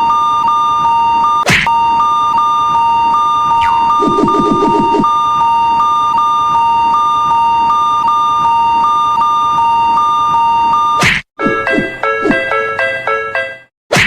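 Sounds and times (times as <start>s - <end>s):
stepped beeping tones: 0.0s - 12.5s
electronic crossing bell: 3.2s - 6.0s.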